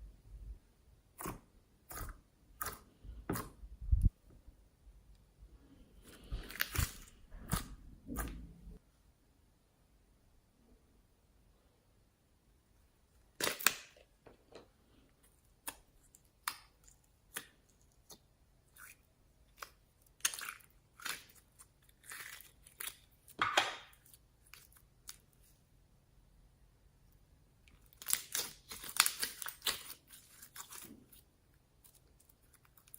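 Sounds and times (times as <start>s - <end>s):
hands squishing slime: 6.0s - 8.8s.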